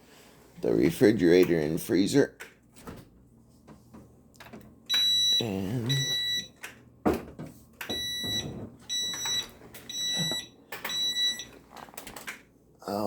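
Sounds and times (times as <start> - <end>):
electronic appliance beeps: 4.9 - 6.6, 7.8 - 11.6.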